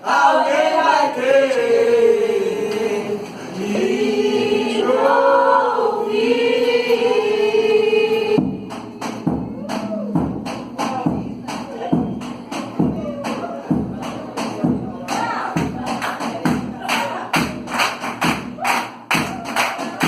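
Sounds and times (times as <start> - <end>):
choir singing sustained notes: 0.0 - 9.0.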